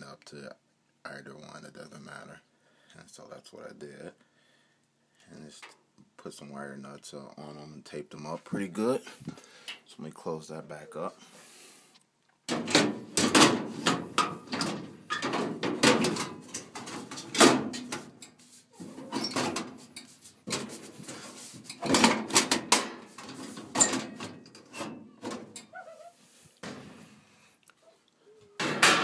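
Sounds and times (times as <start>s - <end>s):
sheet-metal panel clunking and scraping: 12.5s - 25.6s, 28.6s - 29.0s.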